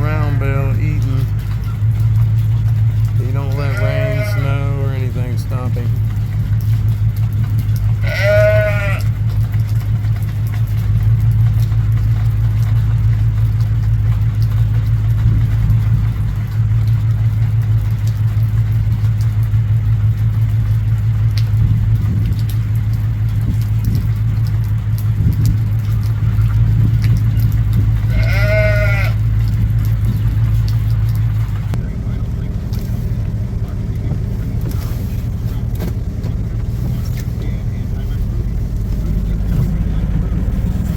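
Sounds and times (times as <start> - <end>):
vehicle engine idling: 0.0 - 40.9
farm animal bleating: 3.2 - 6.1, 7.8 - 9.3, 28.0 - 29.6.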